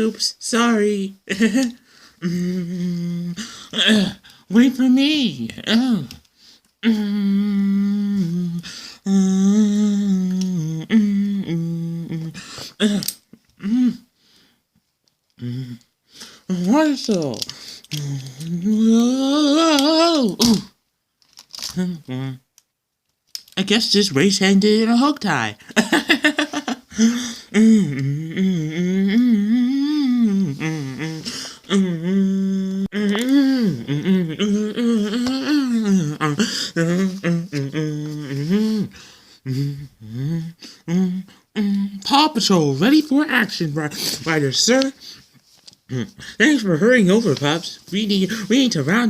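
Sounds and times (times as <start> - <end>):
person humming a tune: 2.2 - 4.1, 6.8 - 14.0, 17.9 - 20.6, 21.8 - 22.4, 26.3 - 38.9, 39.5 - 42.0.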